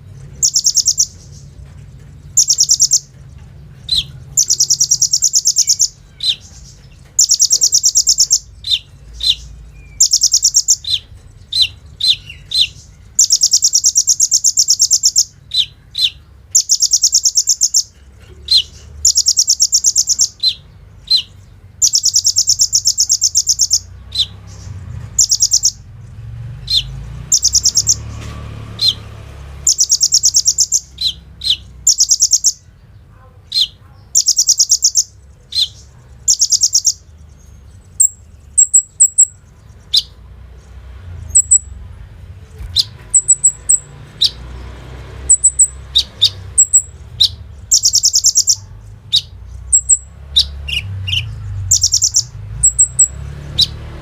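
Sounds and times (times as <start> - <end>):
bird chips: 0.0 - 32.8, 33.4 - 41.8, 42.4 - 54.0
bird trilling: 0.3 - 1.5, 2.2 - 3.2, 3.8 - 32.8, 33.5 - 40.2, 41.1 - 41.8, 42.5 - 54.0.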